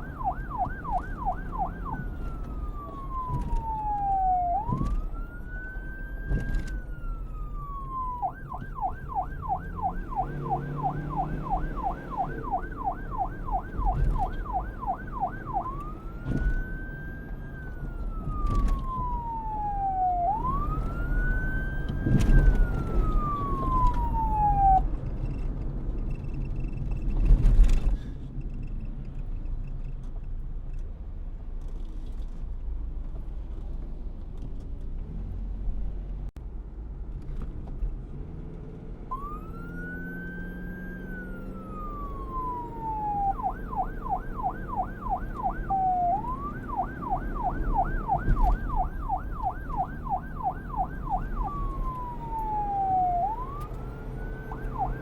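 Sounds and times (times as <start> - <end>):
emergency siren wailing and yelping: 0.0 - 25.0, 39.1 - 55.0
low traffic rumble: 0.0 - 55.0.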